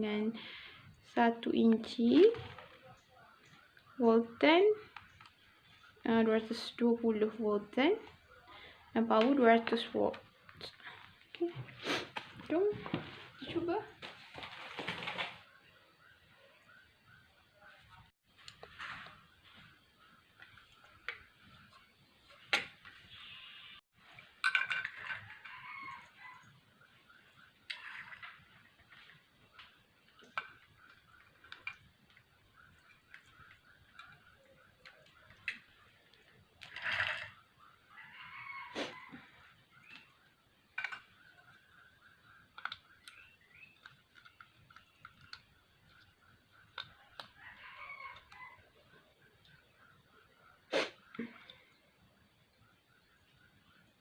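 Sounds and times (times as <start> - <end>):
rooster crowing: 25.1 - 26.5, 37.9 - 39.4, 47.0 - 48.6
chicken calls: 37.9 - 40.0.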